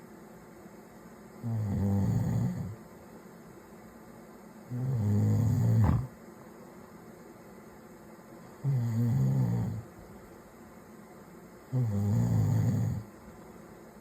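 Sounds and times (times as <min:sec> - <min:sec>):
man snoring: 0:01.4 - 0:02.8, 0:04.7 - 0:06.1, 0:08.6 - 0:09.8, 0:11.7 - 0:13.1.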